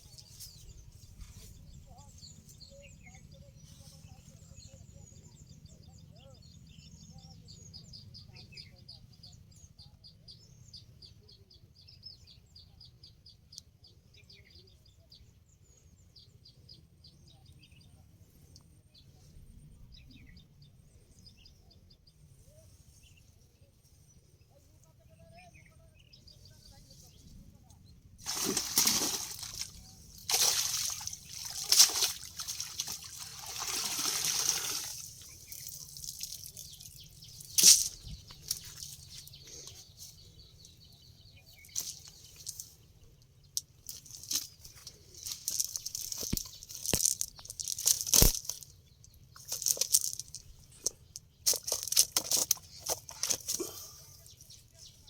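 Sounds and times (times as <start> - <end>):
water splashing and dripping: 28.2 - 37.0.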